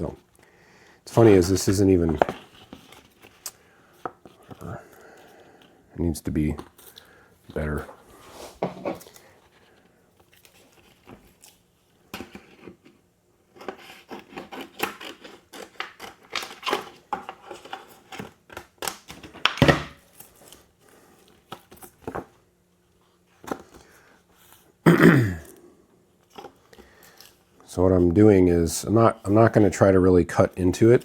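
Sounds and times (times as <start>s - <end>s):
vinyl sheet crinkling and scraping: 1.1s - 5.2s, 6.4s - 12.9s.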